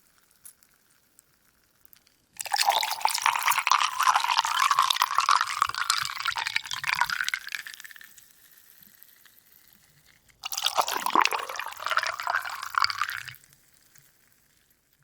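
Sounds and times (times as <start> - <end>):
water poured over ice cubes: 2.4 - 8.1, 10.4 - 13.4.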